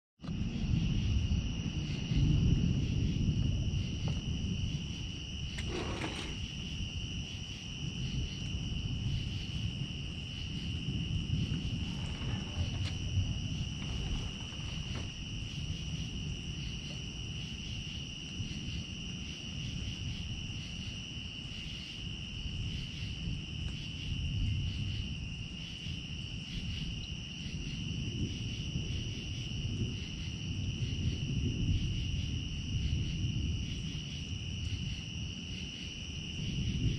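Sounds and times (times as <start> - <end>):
low rumbling noise: 0.2 - 17.5
crickets trilling: 0.2 - 36.9.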